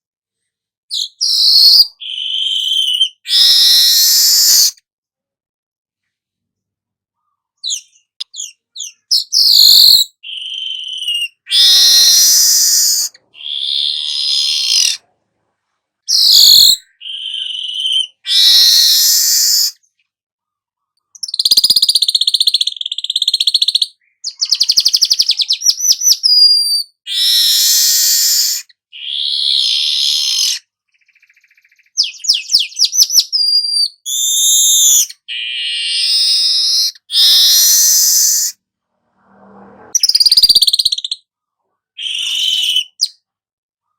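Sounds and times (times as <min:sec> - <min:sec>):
weaver bird singing: 0:07.2 - 0:15.0, 0:16.1 - 0:20.0, 0:21.1 - 0:38.5, 0:40.0 - 0:41.2, 0:42.0 - 0:43.2.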